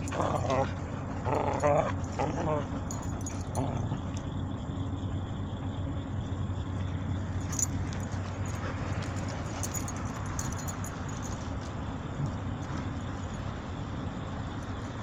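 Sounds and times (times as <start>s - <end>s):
collar tags jingling: 0.0s - 4.4s, 6.8s - 12.2s
low background rumble: 0.0s - 15.0s.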